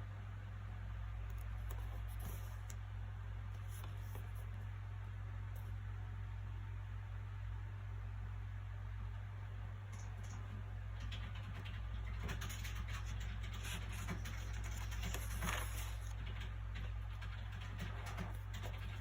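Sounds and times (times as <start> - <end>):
low background hum: 0.0 - 19.0
book pages rustling: 1.4 - 2.8, 3.6 - 4.6, 13.6 - 16.2.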